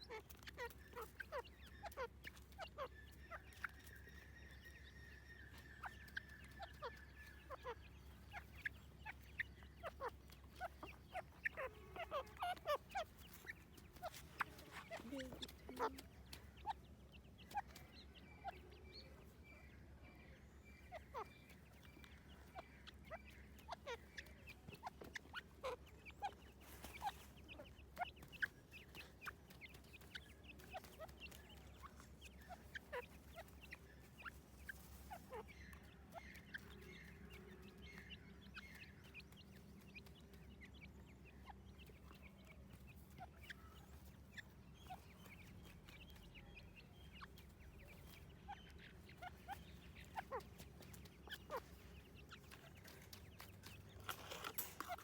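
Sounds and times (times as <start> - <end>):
birds chirping and clucking: 0.0 - 55.0.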